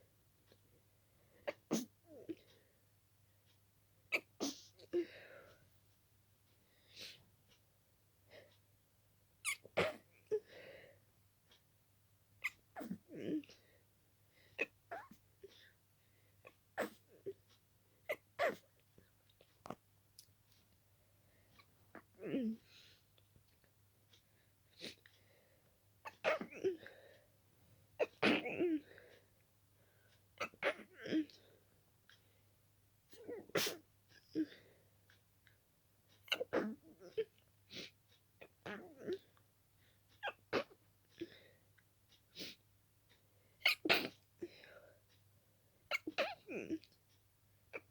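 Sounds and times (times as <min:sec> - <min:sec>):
soft breathy sound: 0:04.7 - 0:05.9, 0:44.4 - 0:45.2
person sneezing: 0:33.5 - 0:33.8.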